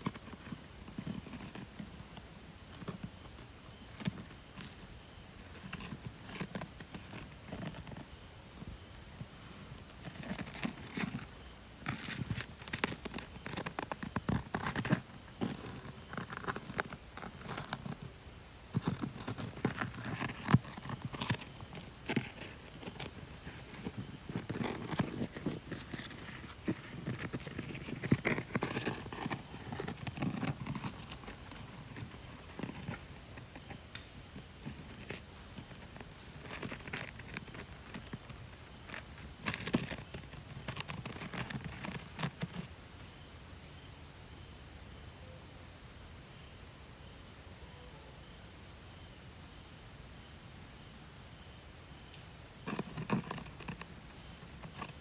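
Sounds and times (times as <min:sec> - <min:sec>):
crunching dry forest debris: 0:18.7 - 0:42.7.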